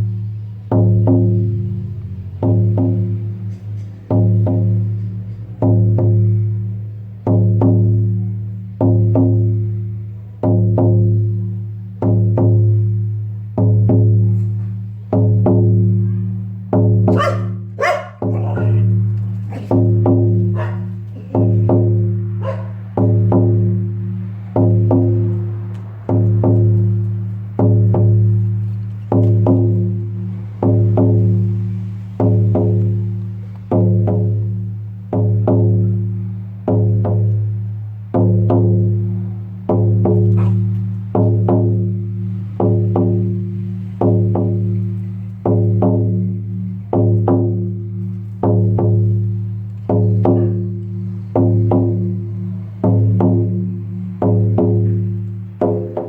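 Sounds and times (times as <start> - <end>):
frame drum booming beat: 0.0 - 56.0.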